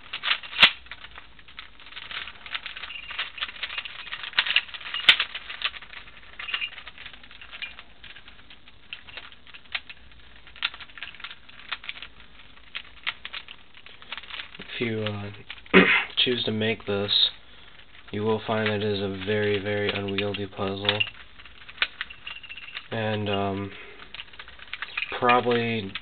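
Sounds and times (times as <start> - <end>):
plastic puzzle clicking: 0.0 - 15.8, 17.8 - 26.0.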